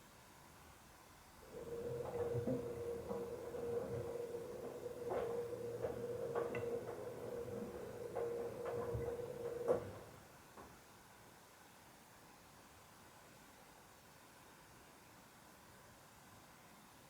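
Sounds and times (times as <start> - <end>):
washing machine motor hum: 1.4 - 10.3
drum knocks and clicks: 1.8 - 10.1.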